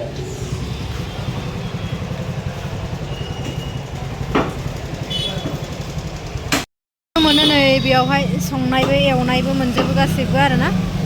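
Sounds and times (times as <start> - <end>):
vehicle engine rumbling: 0.0 - 6.6.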